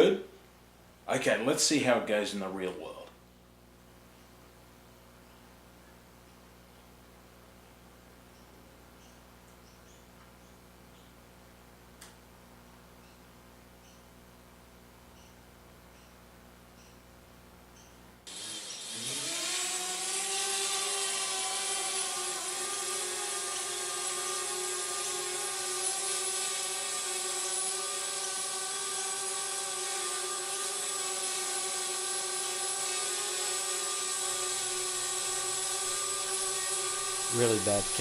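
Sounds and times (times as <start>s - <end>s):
drone propeller motors buzzing: 18.3s - 38.0s.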